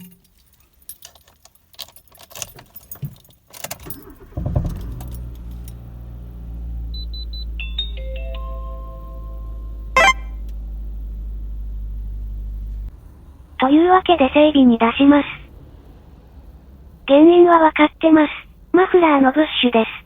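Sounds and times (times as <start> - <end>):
car keys jangling: 0.0 - 6.2
car engine starting and idling: 2.3 - 20.0
short electronic beeps: 10.0 - 10.4.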